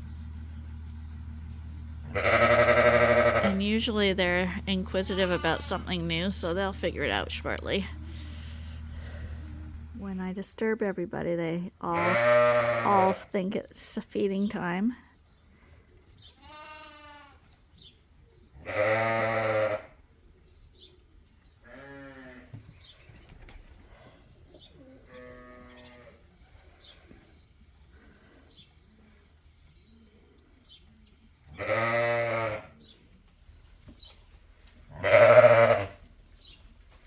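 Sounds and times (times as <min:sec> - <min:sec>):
sheep bleating deeply: 0:02.0 - 0:03.6, 0:12.0 - 0:13.2, 0:16.4 - 0:17.4, 0:18.6 - 0:19.9, 0:31.5 - 0:32.7, 0:34.9 - 0:36.0
higher-pitched sheep bleats: 0:02.1 - 0:03.6, 0:12.0 - 0:13.2, 0:16.4 - 0:17.4, 0:18.7 - 0:19.9, 0:31.5 - 0:32.7, 0:34.9 - 0:36.0.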